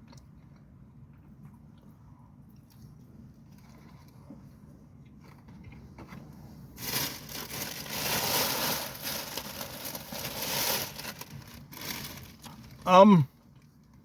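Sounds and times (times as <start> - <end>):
loud crinkling rustling: 6.8 - 12.9.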